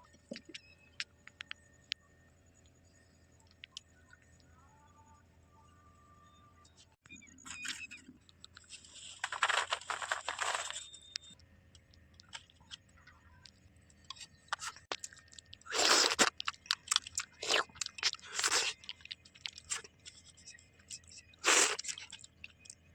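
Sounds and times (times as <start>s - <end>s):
small wet clicks: 0.1s - 2.0s, 7.5s - 22.9s
person chewing and crunching: 7.5s - 10.8s, 11.8s - 22.9s.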